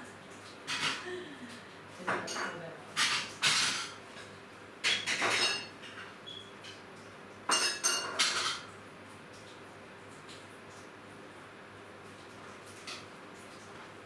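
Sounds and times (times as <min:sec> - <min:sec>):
crockery and glassware clinking: 0:07.5 - 0:08.6.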